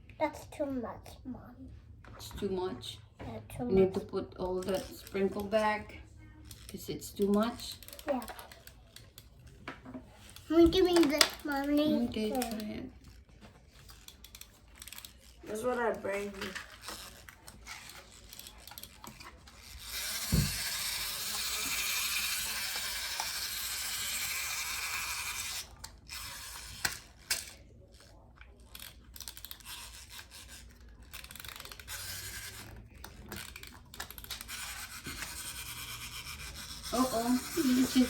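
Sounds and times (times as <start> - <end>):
toy parts clicking and rustling: 3.9 - 38.0
clockwork mechanism whirring: 10.2 - 38.0.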